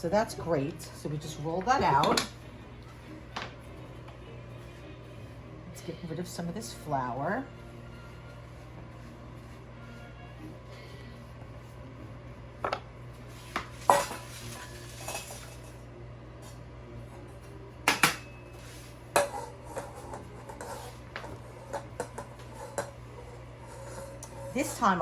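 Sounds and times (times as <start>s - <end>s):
utensils and bowl clinking: 0.0s - 2.4s, 13.5s - 15.9s, 17.9s - 25.0s.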